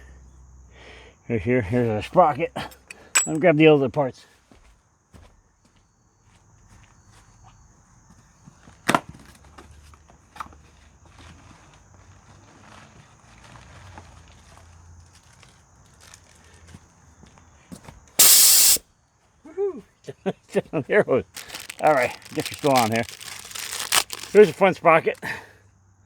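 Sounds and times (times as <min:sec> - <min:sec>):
short loud burst of noise: 0:18.2 - 0:18.8
footsteps: 0:21.4 - 0:24.7.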